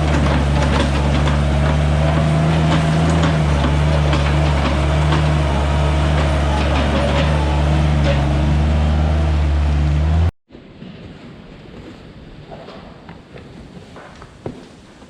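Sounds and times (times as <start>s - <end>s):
clattering knocks: 0.0s - 8.8s
machine engine droning: 0.0s - 10.3s.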